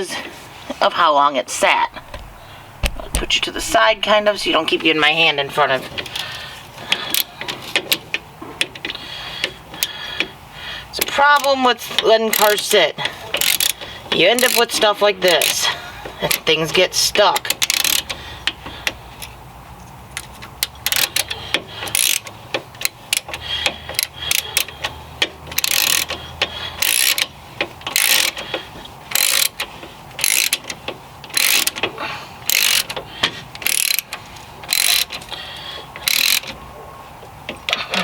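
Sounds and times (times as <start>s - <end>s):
ratchet wrench clicking: 11.0s - 11.6s, 12.3s - 12.8s, 13.4s - 15.6s, 17.4s - 18.1s, 20.6s - 24.8s, 25.5s - 26.2s, 26.8s - 28.5s, 29.1s - 29.6s, 30.2s - 33.0s, 33.6s - 35.2s, 36.0s - 36.5s.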